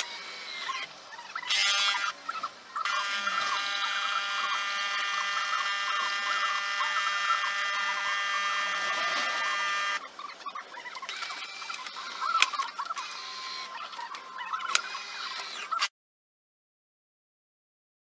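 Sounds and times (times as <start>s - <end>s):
espresso machine pump buzzing: 2.8s - 10.0s.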